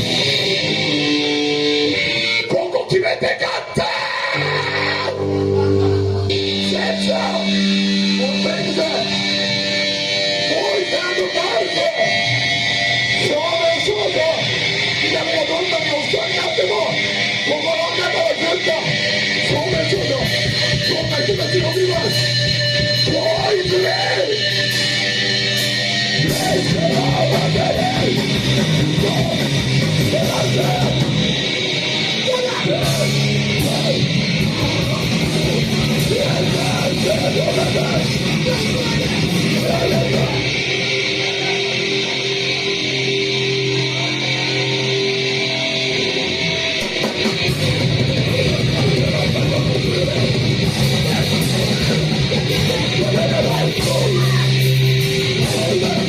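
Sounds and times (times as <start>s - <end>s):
distorted electric guitar: 0.0s - 56.0s
person yelling vocals: 2.5s - 6.0s, 32.2s - 34.1s, 52.7s - 54.7s.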